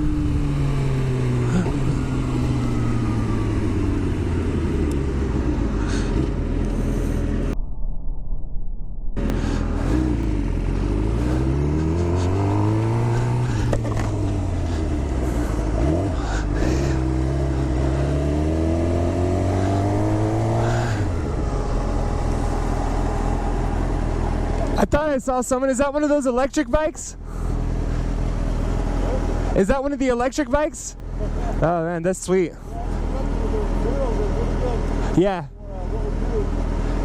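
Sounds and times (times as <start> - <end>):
motorcycle engine revving: 0.0 - 7.6, 9.2 - 24.8.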